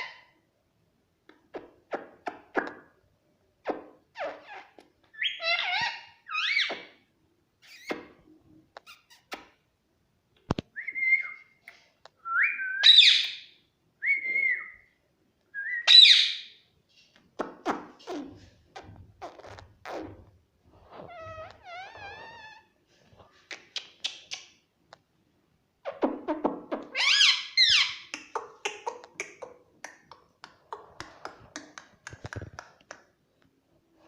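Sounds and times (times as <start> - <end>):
parrot calling and whistling: 5.2 - 6.9, 10.8 - 11.6, 12.3 - 14.9, 15.6 - 16.6, 26.8 - 28.1.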